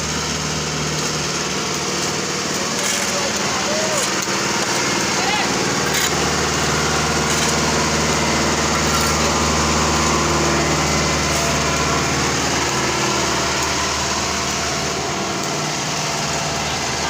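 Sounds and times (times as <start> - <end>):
construction machinery engine running: 0.0 - 17.0.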